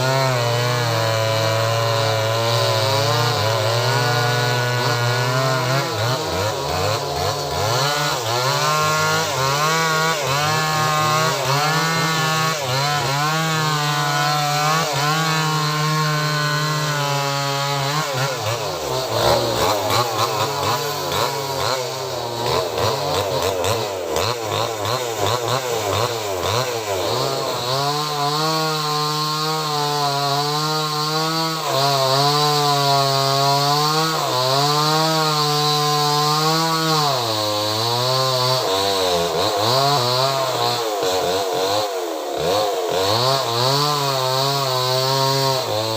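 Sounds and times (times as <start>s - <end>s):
chainsaw cutting tree trunk: 0.0s - 45.9s.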